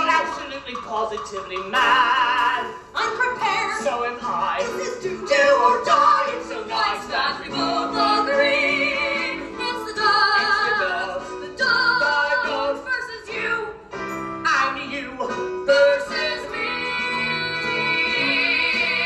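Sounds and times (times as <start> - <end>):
musical accompaniment: 0.0 - 19.0
duet singing with vibrato: 0.2 - 13.8, 15.2 - 19.0.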